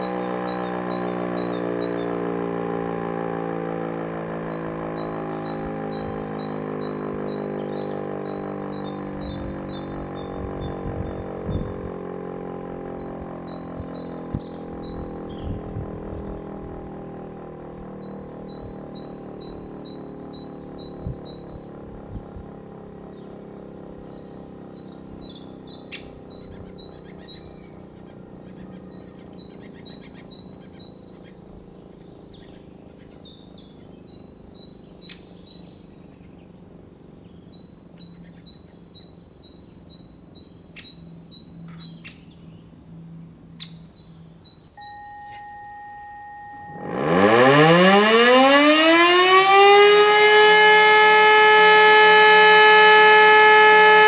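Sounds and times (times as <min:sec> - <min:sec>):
bird chirping: 0:00.0 - 0:02.2, 0:04.4 - 0:12.1, 0:12.9 - 0:54.0
motor siren howling: 0:00.0 - 0:54.0
brief steady tone: 0:44.7 - 0:48.4.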